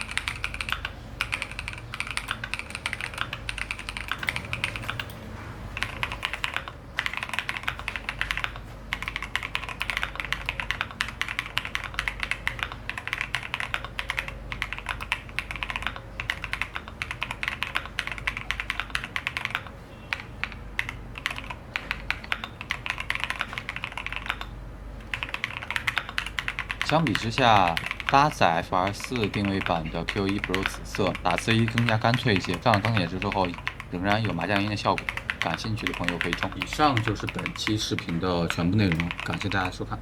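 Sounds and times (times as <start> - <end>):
mechanical keyboard typing: 0.0 - 40.0.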